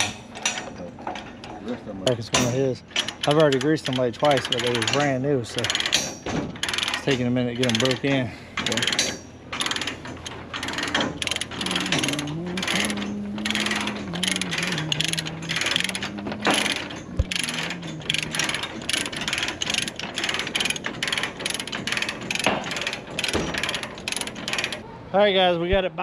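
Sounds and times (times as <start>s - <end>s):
ratchet chain binder clicking: 0.0s - 24.8s
wavering tone: 11.4s - 19.0s.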